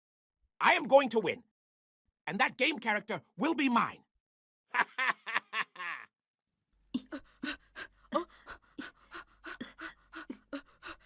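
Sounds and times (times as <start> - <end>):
person panting quickly: 7.2 - 11.0.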